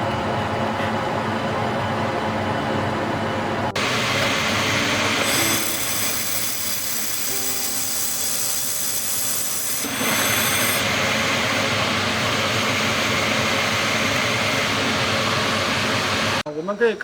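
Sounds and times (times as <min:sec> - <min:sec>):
welding machine whir and hiss: 0:03.8 - 0:16.4.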